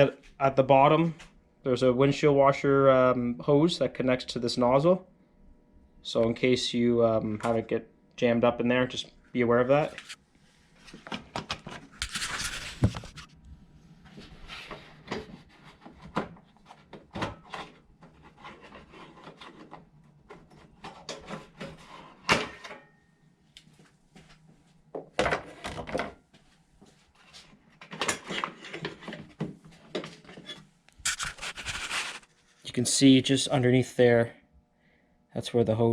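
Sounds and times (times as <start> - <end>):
plastic rubbing and scraping: 9.9 - 13.4, 14.0 - 22.3, 27.1 - 32.7.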